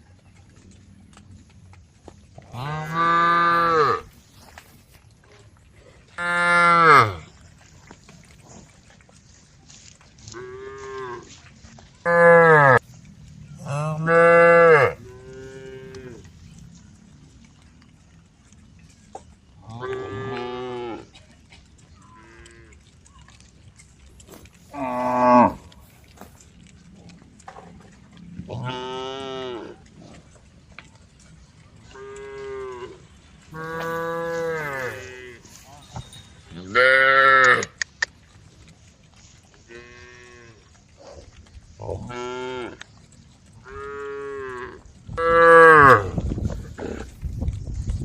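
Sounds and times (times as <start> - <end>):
cows mooing: 2.4 - 4.2, 6.2 - 7.4, 10.3 - 11.4, 12.0 - 16.6, 19.6 - 21.1, 22.0 - 22.8, 24.3 - 26.4, 28.3 - 29.9, 31.9 - 37.8, 39.6 - 40.8, 41.8 - 42.8, 43.6 - 47.2.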